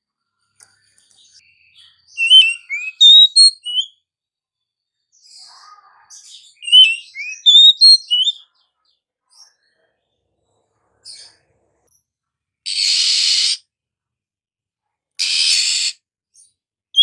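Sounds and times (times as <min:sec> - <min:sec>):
bird singing whistled notes: 0:01.3 - 0:04.0, 0:06.4 - 0:08.4.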